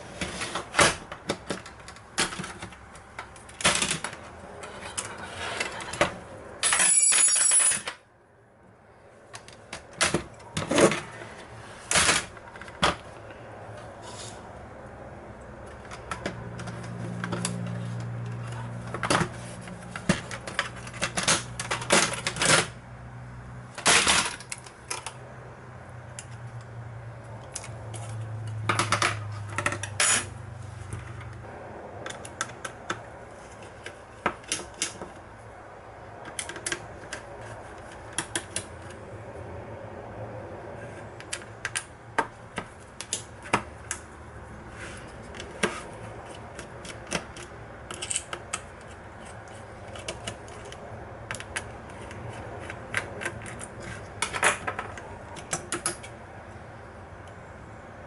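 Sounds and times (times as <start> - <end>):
laptop parts clicking and clattering: 0.2 - 8.0, 9.2 - 13.9, 15.6 - 22.8, 23.7 - 25.3, 26.0 - 39.2, 40.8 - 56.6.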